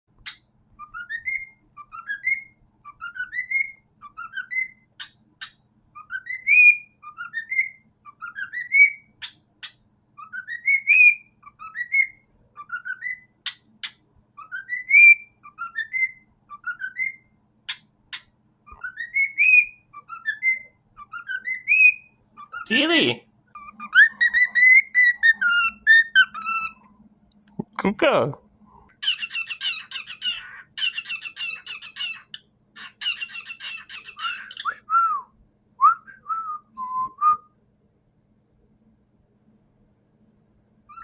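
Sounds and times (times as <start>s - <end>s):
cockatiel whistling: 0.2s - 22.8s, 23.5s - 26.8s, 29.0s - 37.5s
sharp bird chirps: 29.0s - 34.8s.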